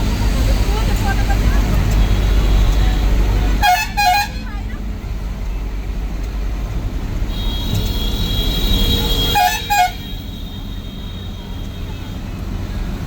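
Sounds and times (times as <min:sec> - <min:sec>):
bus engine and road rumble: 0:00.0 - 0:13.0
vehicle horn toots: 0:03.6 - 0:04.4, 0:07.3 - 0:12.2.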